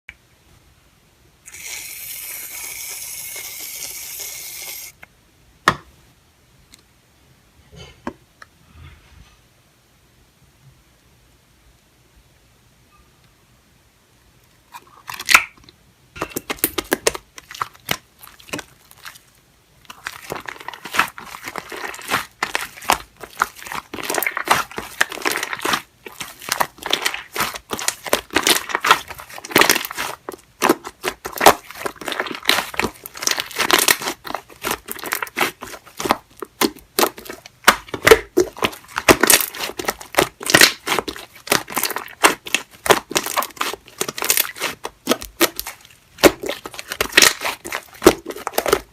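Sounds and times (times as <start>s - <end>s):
slime squeezed crackling and popping: 16.5s - 48.9s.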